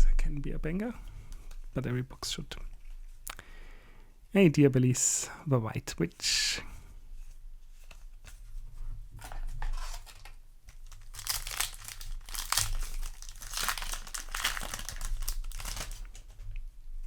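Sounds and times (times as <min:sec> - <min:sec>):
foil wrapper crinkling and tearing: 0:09.2 - 0:16.3.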